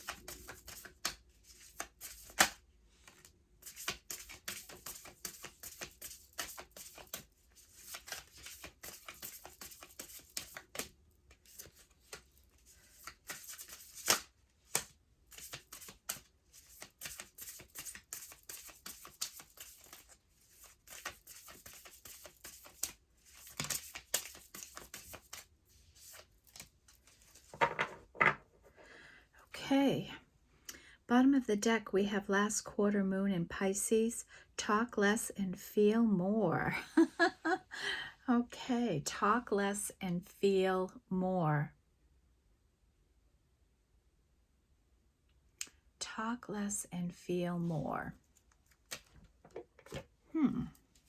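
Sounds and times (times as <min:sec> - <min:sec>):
cards shuffling: 0:00.0 - 0:28.0, 0:48.3 - 0:50.1.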